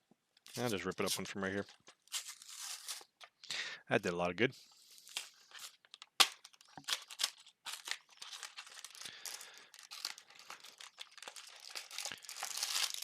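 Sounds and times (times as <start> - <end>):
packaging crinkling: 5.1 - 13.0
cardboard packaging snapping: 6.2 - 8.5.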